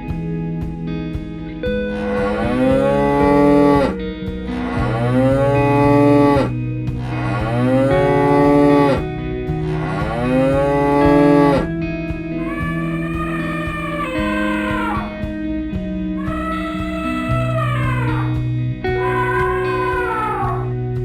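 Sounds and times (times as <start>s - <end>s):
guitar music: 0.0s - 21.0s
cattle mooing: 1.9s - 9.0s, 9.7s - 11.7s.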